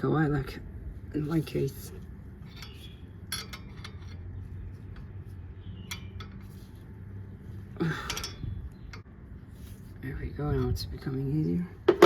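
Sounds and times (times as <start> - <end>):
wrench clinking on metal nuts: 2.5 - 4.3, 8.0 - 8.5.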